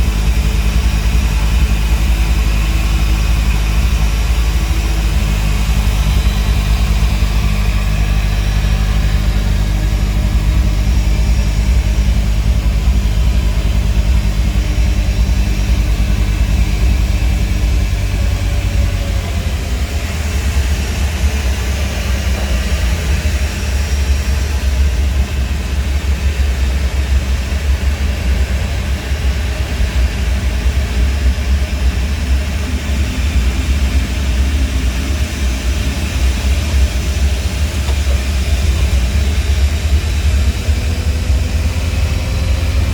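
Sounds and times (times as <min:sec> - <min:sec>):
airliner engine rumble: 0:00.0 - 0:42.9
faint high whine: 0:32.1 - 0:42.9.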